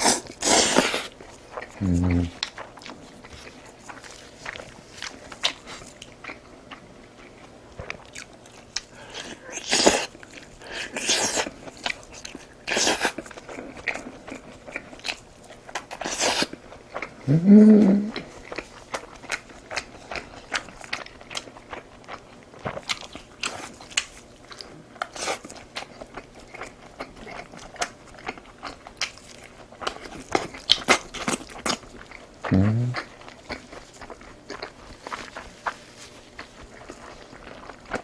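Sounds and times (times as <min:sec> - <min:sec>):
crunching bites and chewing: 0:00.0 - 0:17.3, 0:18.0 - 0:38.0
person humming: 0:01.8 - 0:02.4, 0:17.2 - 0:18.2, 0:32.5 - 0:33.1.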